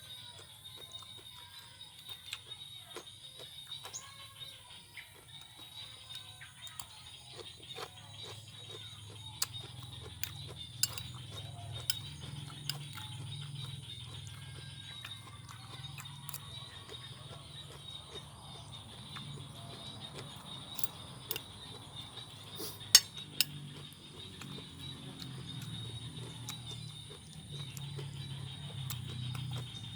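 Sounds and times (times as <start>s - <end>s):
crunchy chewing: 0.0s - 29.9s
utensils clicking: 10.2s - 13.1s, 20.7s - 21.5s, 22.6s - 23.6s.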